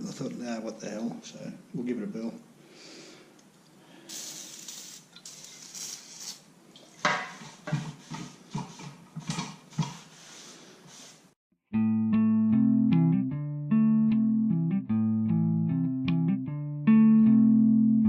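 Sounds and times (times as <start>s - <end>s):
hissy rubbing scraping: 4.1s - 11.4s.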